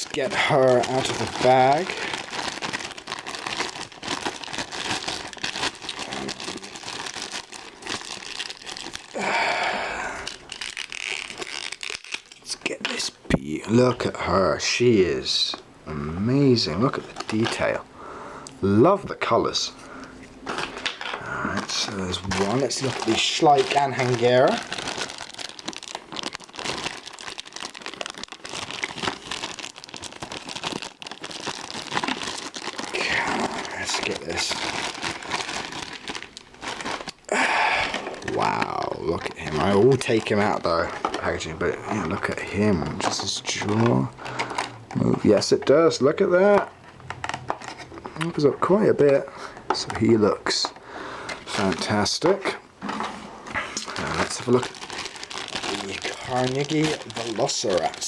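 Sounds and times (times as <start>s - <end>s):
plastic bag crinkling: 0.0s - 13.1s, 16.3s - 17.8s, 20.4s - 58.0s.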